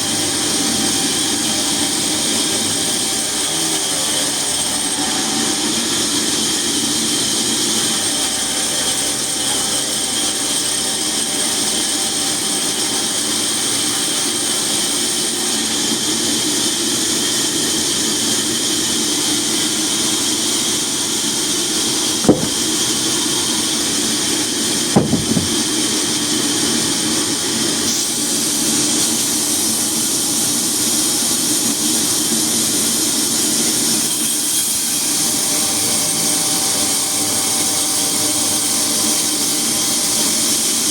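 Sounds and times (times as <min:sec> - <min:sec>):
sharp knocks: 0:22.2 - 0:22.9, 0:25.0 - 0:25.8.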